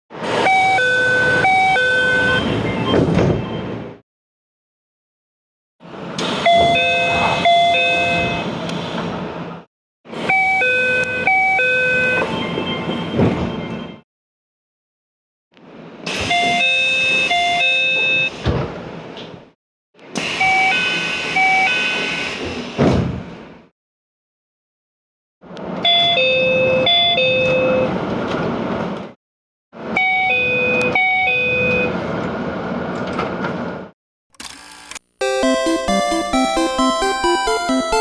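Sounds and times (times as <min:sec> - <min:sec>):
train door chimes: 0:06.5 - 0:08.5.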